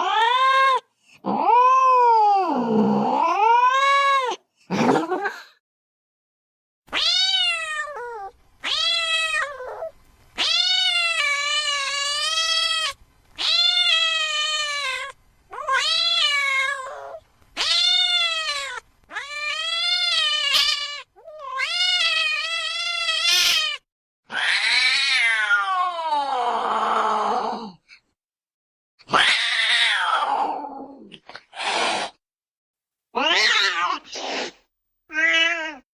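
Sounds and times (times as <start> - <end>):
cat meowing: 6.9 - 26.2, 29.1 - 30.8, 33.2 - 34.1, 35.1 - 35.8.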